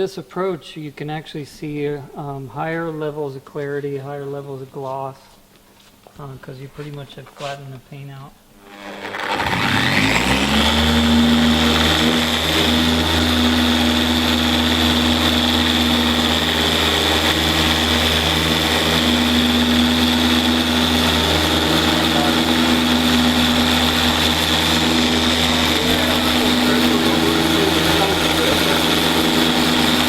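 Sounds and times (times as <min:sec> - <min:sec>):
polisher motor hum and whine: 0:08.6 - 0:30.0.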